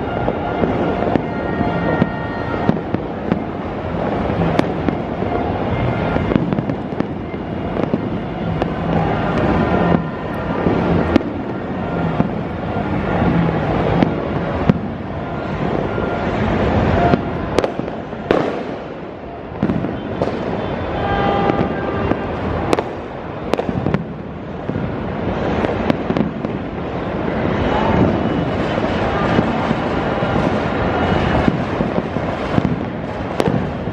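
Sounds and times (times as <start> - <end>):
rumble of fireworks blasts: 0.0 - 33.9
firework cracks and pops: 17.0 - 33.9.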